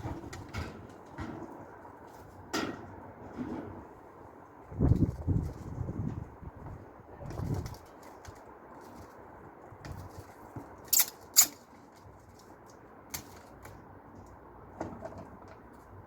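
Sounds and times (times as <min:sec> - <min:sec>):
metal parts clinking: 0:10.8 - 0:11.6.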